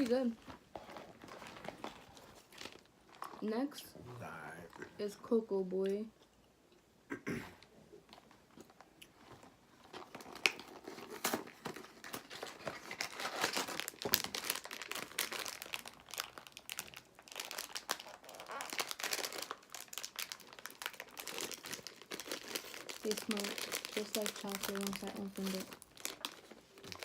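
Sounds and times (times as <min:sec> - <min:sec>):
plastic wrapper crinkling: 0:00.0 - 0:03.5, 0:08.1 - 0:27.0
wrapper snapping: 0:09.8 - 0:27.0.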